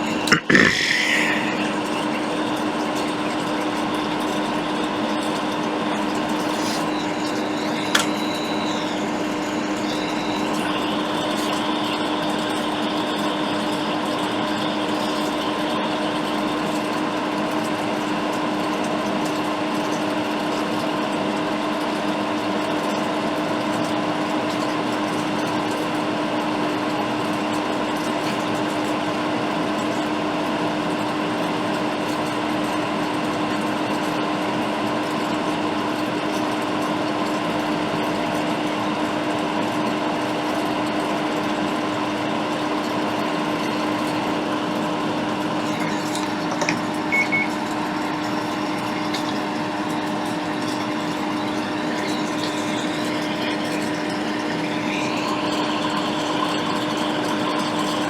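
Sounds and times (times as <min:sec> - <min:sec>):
hot air station blowing: 0:00.0 - 0:13.8.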